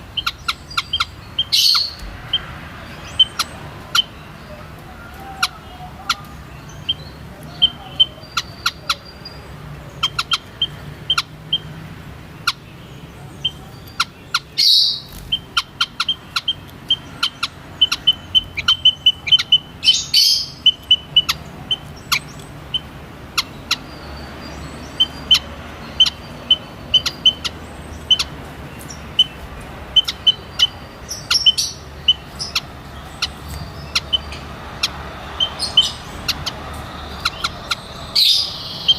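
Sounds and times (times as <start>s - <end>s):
munia high chirping calls: 0.0s - 38.9s.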